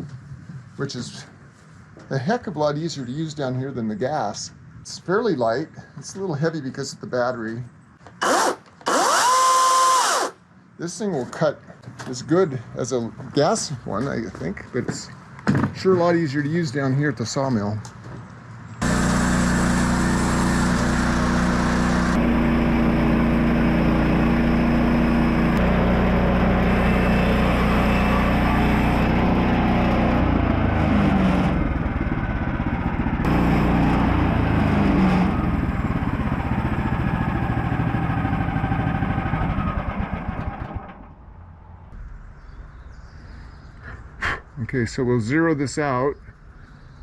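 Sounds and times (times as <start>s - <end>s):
engine running: 8.2s - 10.4s, 18.8s - 42.2s.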